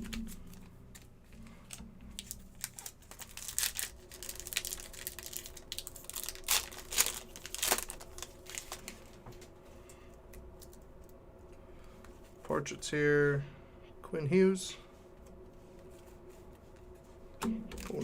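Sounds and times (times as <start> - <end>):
foil wrapper crinkling and tearing: 1.7 - 9.2, 17.8 - 18.0.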